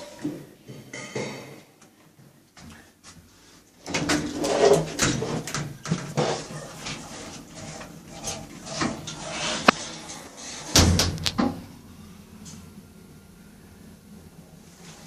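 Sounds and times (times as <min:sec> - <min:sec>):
lift doors closing thud: 0:10.7 - 0:11.6.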